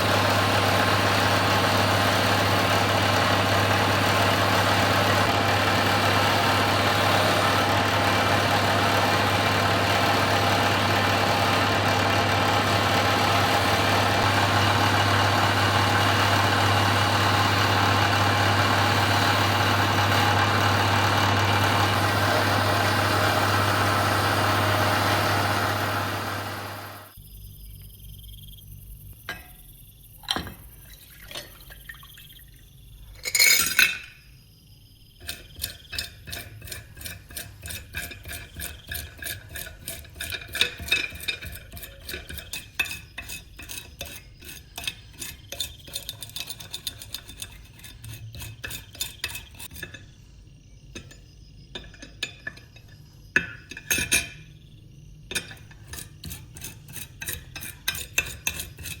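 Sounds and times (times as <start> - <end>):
knocks and clinks on metal: 51.0 - 54.5.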